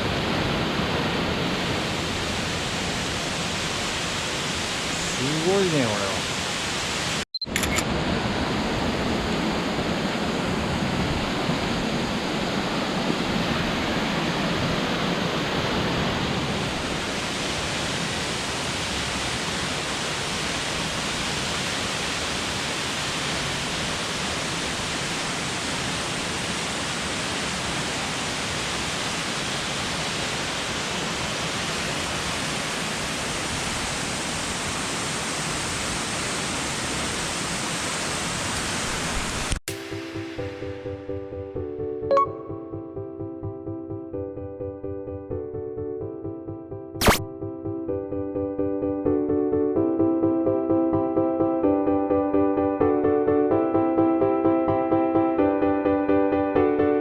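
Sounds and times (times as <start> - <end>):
waterfall rushing: 0.0 - 7.2, 7.9 - 39.6.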